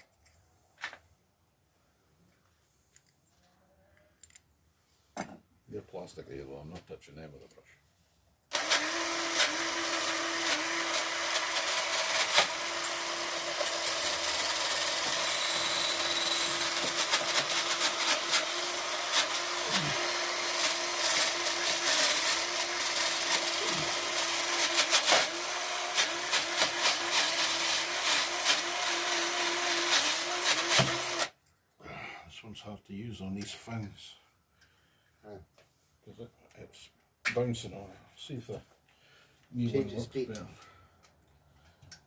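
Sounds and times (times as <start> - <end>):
cordless drill motor whine: 8.5 - 31.3.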